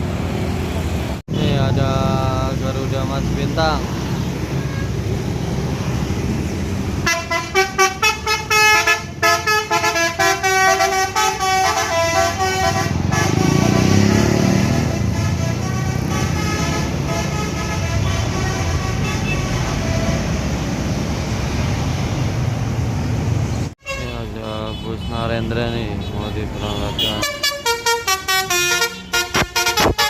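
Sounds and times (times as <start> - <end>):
traffic noise: 0.0 - 30.0
bus musical horn toots: 4.6 - 5.0, 7.0 - 20.3, 23.8 - 25.3, 26.6 - 30.0.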